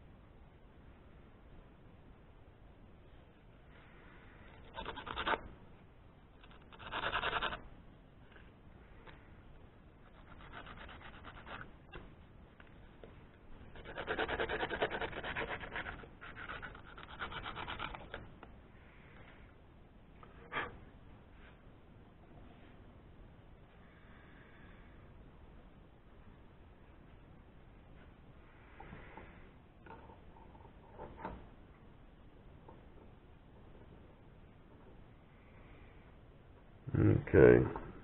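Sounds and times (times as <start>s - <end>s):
abrasive rubbing on metal part: 4.6s - 5.5s, 6.4s - 7.7s, 10.1s - 12.1s.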